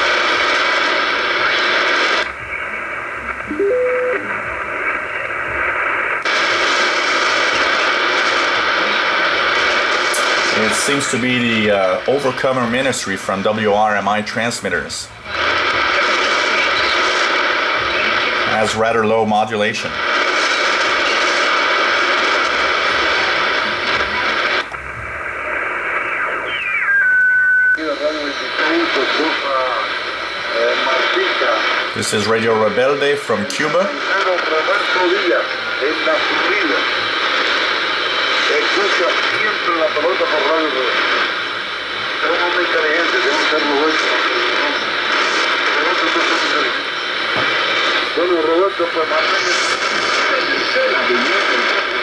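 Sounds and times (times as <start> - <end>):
radio hiss and static: 0.0 - 52.0
whistle rising in pitch: 26.0 - 27.8.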